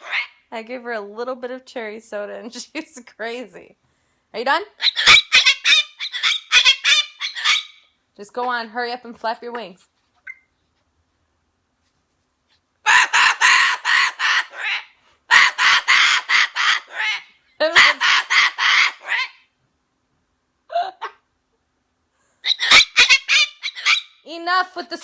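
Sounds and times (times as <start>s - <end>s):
cockatoo screeching: 0.0s - 0.4s, 4.8s - 7.9s, 12.8s - 19.5s, 22.4s - 24.2s.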